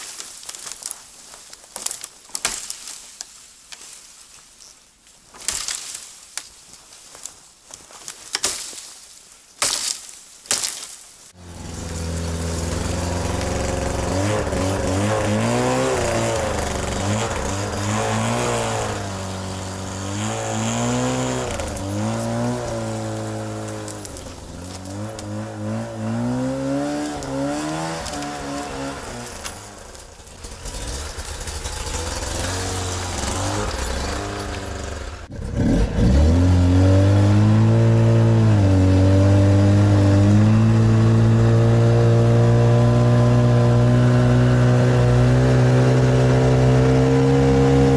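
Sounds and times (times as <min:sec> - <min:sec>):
small engine revving: 0:11.4 - 0:47.9.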